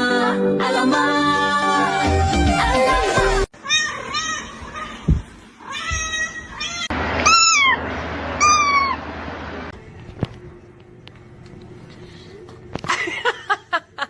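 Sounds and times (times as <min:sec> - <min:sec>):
cat meowing: 0:03.6 - 0:07.8, 0:08.4 - 0:09.0.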